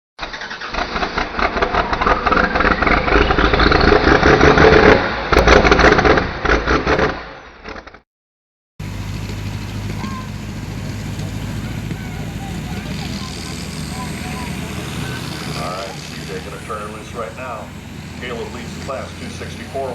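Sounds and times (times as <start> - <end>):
engine revving hard with rattle: 0.3 - 7.8, 8.8 - 19.9
low engine hum: 8.8 - 19.9.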